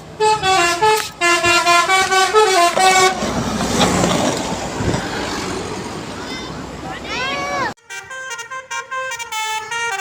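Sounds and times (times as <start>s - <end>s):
rush of vehicle noise: 0.0s - 7.8s
bus horn playing a tune: 0.1s - 3.3s, 7.8s - 10.0s.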